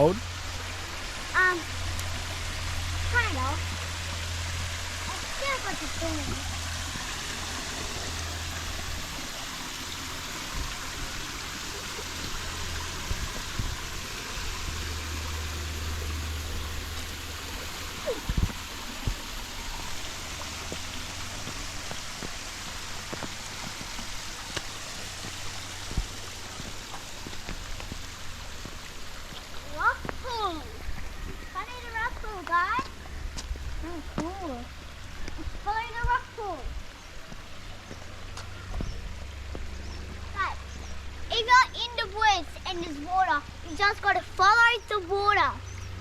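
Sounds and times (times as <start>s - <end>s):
water rushing in creek: 0.0s - 46.0s.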